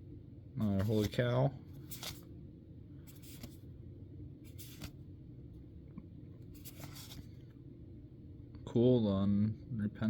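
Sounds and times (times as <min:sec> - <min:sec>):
low steady hum: 0:00.0 - 0:10.0
cards sliding by hand: 0:00.6 - 0:02.3, 0:03.1 - 0:03.7, 0:04.5 - 0:05.0, 0:06.4 - 0:07.4.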